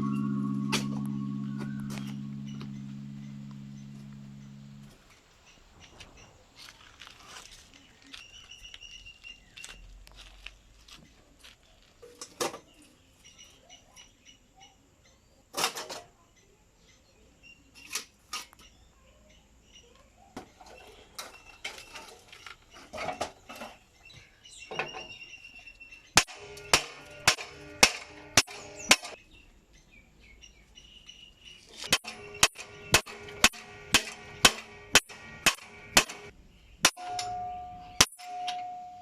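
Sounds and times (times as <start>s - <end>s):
steady whine: 0.0s - 5.1s, 32.0s - 36.3s
hammer striking metal: 26.2s - 29.2s, 31.9s - 39.0s.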